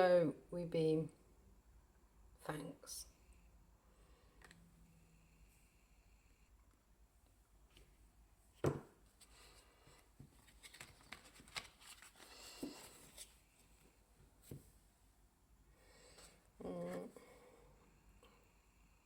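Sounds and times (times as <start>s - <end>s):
cards clicking and rustling: 10.4s - 13.3s.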